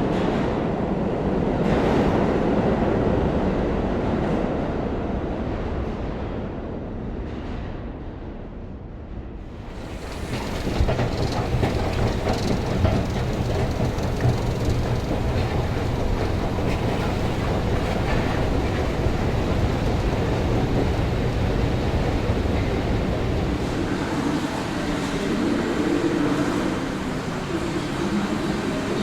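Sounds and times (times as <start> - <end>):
subway train rumbling on rails: 0.0 - 29.0
wheels clicking on track: 9.5 - 29.0.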